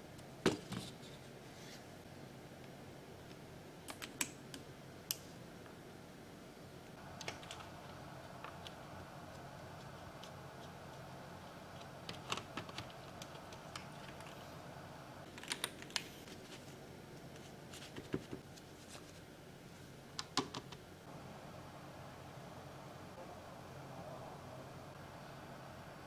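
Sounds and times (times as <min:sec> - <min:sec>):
low background hum: 0:00.0 - 0:26.0
mechanical keyboard clicks: 0:15.3 - 0:16.0.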